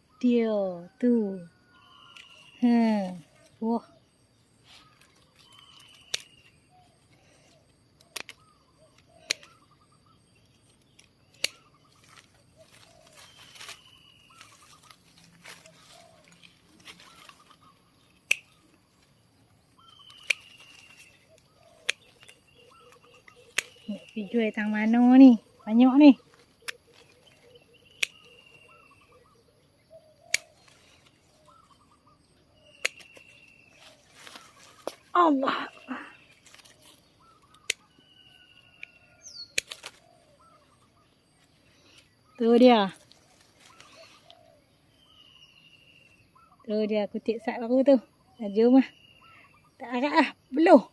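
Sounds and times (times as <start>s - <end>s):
birds chirping: 0.0s - 50.9s
sharp clicks: 5.4s - 6.6s, 8.0s - 9.8s, 10.6s - 12.4s, 18.2s - 18.8s, 20.0s - 24.4s, 27.9s - 28.4s, 30.3s - 30.9s, 32.8s - 33.6s, 37.4s - 38.0s, 38.8s - 40.0s.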